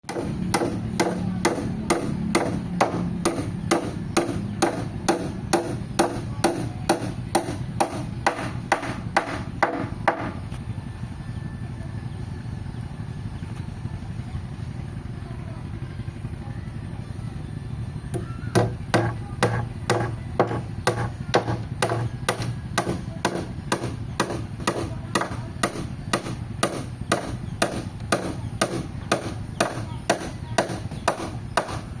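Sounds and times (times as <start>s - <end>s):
hand tool striking wood: 0.1s - 10.4s, 18.1s - 31.9s.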